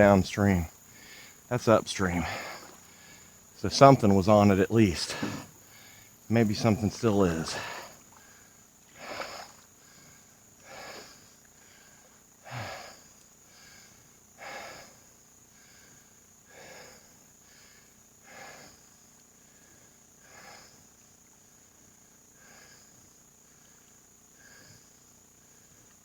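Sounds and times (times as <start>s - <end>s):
high insect buzz: 0.0s - 23.2s
person breathing: 1.0s - 13.0s.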